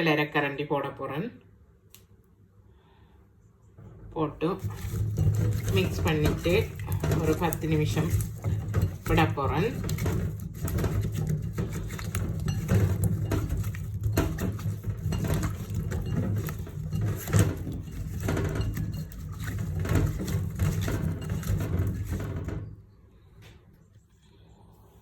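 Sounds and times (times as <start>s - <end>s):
food pieces clattering in bowl: 4.6s - 22.7s.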